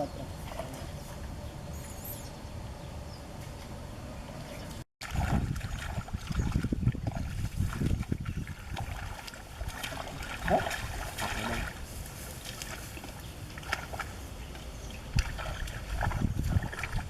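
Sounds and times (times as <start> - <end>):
muddy water sloshing: 0.0 - 1.8, 3.3 - 17.0
knocks in water: 5.0 - 11.8, 15.1 - 17.0.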